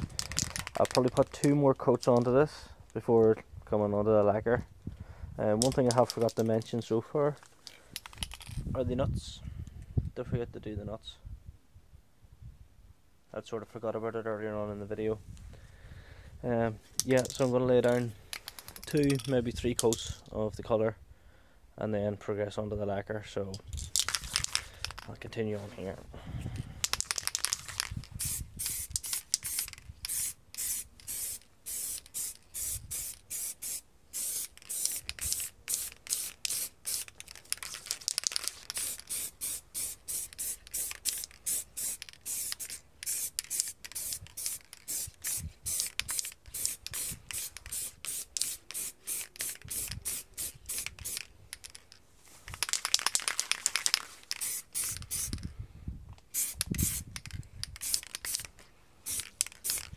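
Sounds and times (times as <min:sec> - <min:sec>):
spray paint can hissing: 0:26.8 - 0:51.3, 0:52.5 - 0:55.4, 0:56.2 - 0:59.9.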